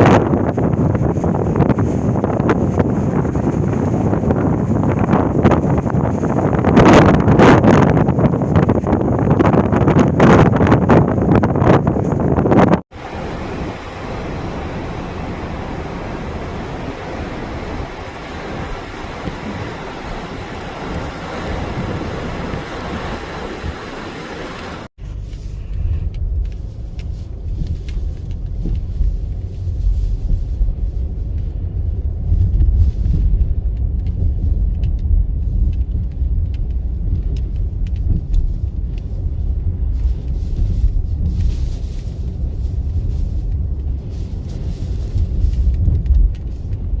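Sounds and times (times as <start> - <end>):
wind buffeting microphone: 0.0 - 47.0
sea surf: 12.9 - 24.9.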